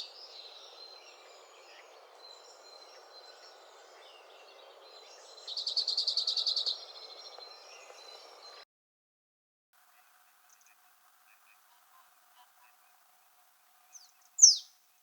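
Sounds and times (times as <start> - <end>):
songbird trilling: 0.0 - 8.6, 13.9 - 14.8
steady outdoor hiss: 0.0 - 8.6, 9.8 - 15.0.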